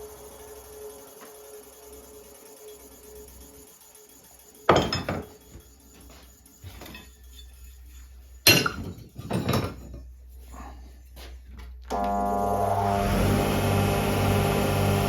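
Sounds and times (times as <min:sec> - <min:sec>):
light metal knocks and clinks: 0:04.7 - 0:05.5, 0:08.4 - 0:10.2.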